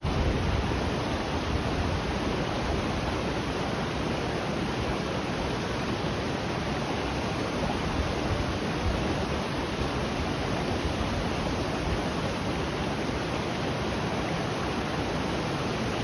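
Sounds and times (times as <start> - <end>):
low water rumble: 0.0 - 3.6
waterfall rushing: 0.1 - 16.0.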